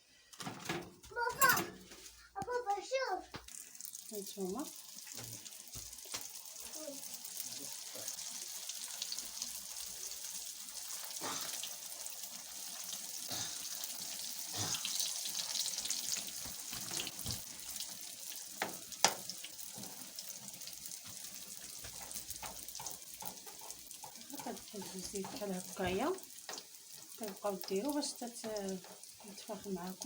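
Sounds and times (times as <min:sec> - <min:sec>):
dough sizzling in hot oil: 0:01.9 - 0:30.0.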